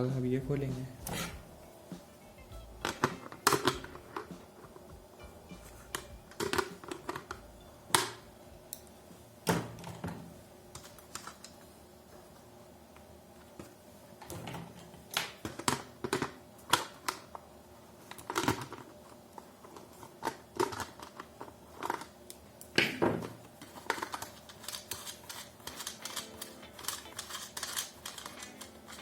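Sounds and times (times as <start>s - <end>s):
plastic and metal parts clicking: 23.6s - 29.0s.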